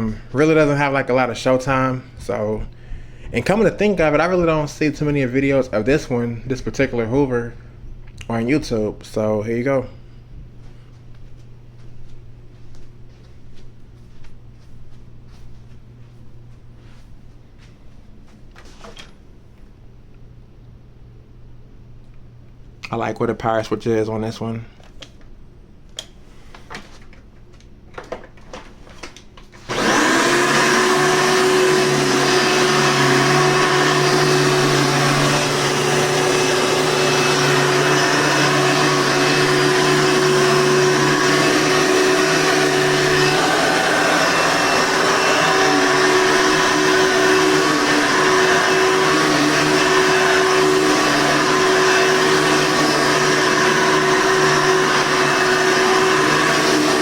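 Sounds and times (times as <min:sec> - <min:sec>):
vacuum cleaner motor humming: 0:29.5 - 0:57.0.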